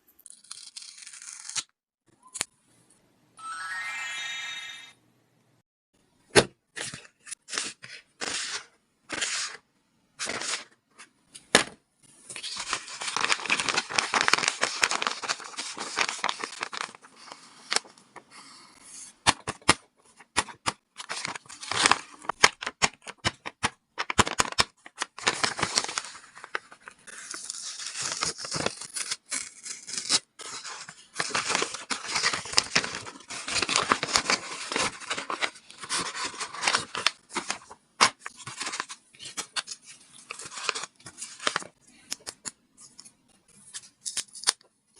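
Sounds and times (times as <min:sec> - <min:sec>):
paper and tape crinkling: 0:12.3 - 0:17.9, 0:24.0 - 0:44.6.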